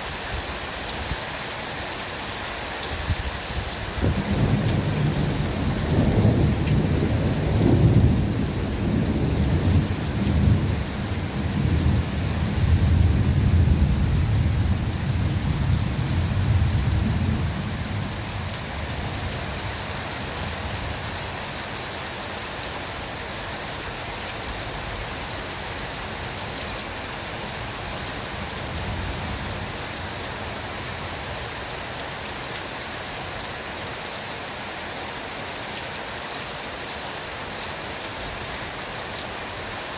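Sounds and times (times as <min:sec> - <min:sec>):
steady rain falling: 0:00.0 - 0:39.9
thunder rumbling: 0:04.0 - 0:18.5.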